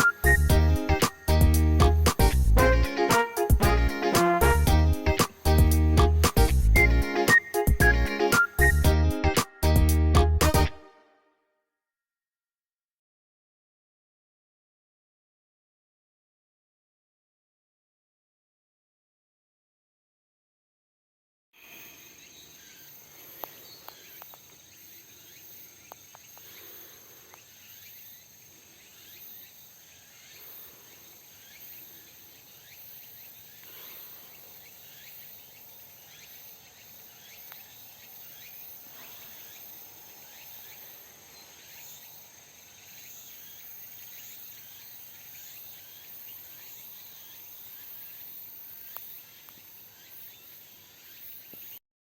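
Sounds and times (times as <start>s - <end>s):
insects droning: 21.6s - 51.8s.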